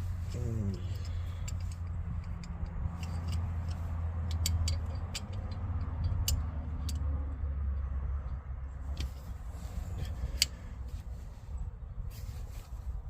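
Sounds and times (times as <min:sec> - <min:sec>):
steady low rumble: 0:00.0 - 0:13.0
metal clicks of pliers and wrench: 0:00.3 - 0:07.1, 0:10.0 - 0:10.6.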